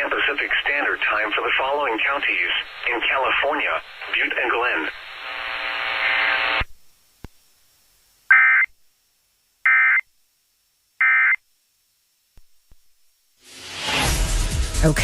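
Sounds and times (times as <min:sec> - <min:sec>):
steady buzzing tone: 0:02.6 - 0:13.4.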